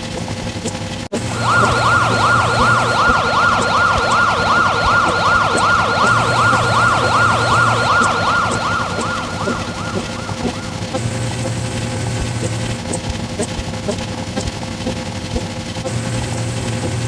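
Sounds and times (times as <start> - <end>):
siren yelp: 1.2 - 11.0.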